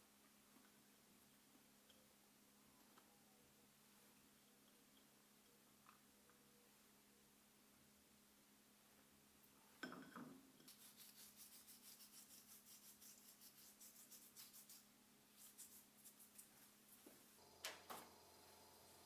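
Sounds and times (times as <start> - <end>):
quick rubbing strokes: 10.7 - 17.0.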